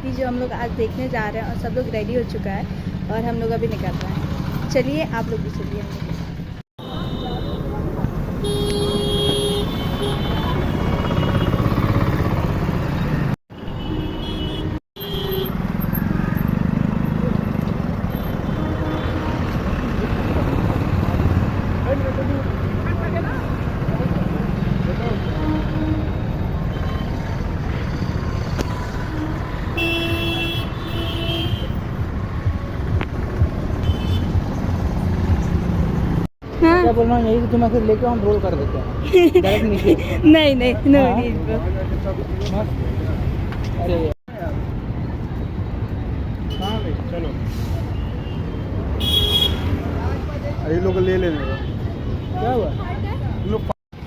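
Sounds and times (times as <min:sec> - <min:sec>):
vehicle engines rumbling: 0:00.0 - 0:54.0
vehicle horn honking: 0:06.8 - 0:07.8, 0:08.4 - 0:11.8, 0:13.6 - 0:15.6, 0:25.1 - 0:27.2, 0:28.8 - 0:31.8, 0:33.8 - 0:34.4, 0:48.1 - 0:49.8.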